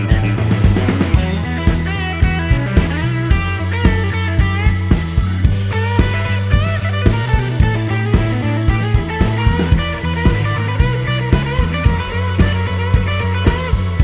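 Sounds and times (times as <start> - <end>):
guitar band music with drums: 0.0 - 14.0.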